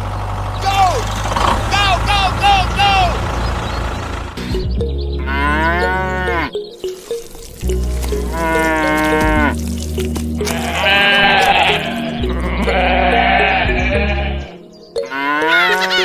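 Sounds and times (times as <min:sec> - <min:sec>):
farm animal calls: 0:00.0 - 0:16.0
background music: 0:04.4 - 0:16.0.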